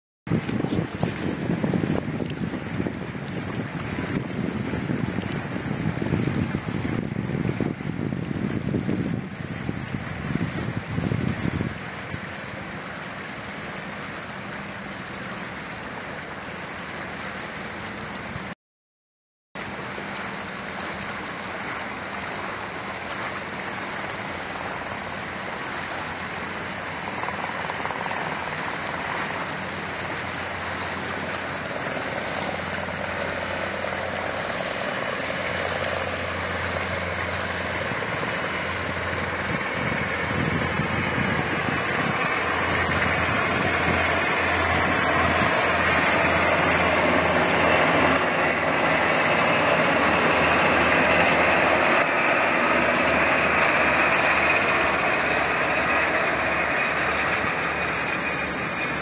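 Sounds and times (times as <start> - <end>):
helicopter drone: 19.7 - 59.0.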